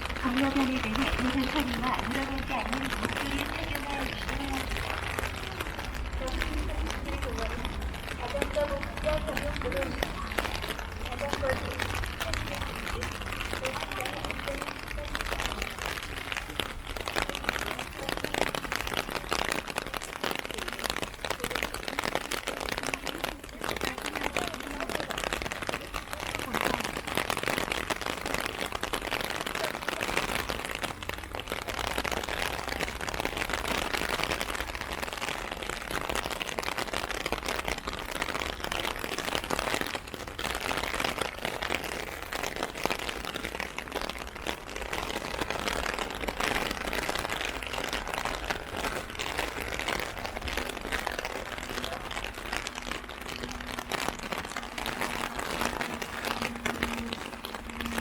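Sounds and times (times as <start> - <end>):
heavy rain on umbrella: 0.0 - 58.0.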